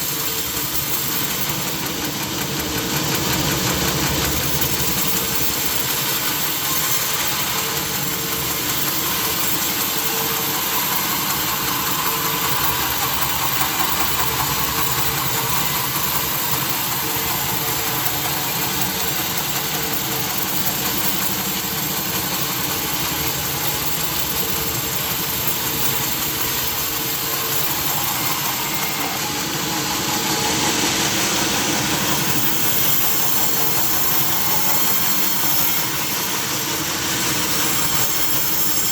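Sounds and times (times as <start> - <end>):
sawmill machinery drone: 0.0 - 38.9.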